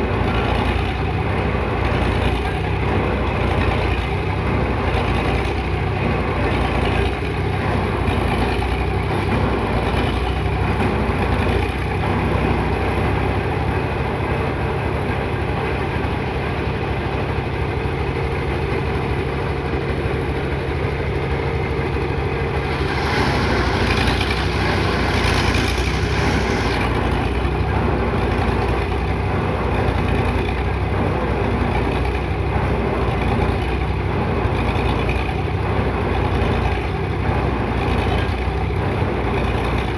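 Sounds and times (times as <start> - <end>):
heavy machinery engine running: 0.0 - 39.9
rush of hissing noise: 22.5 - 27.3.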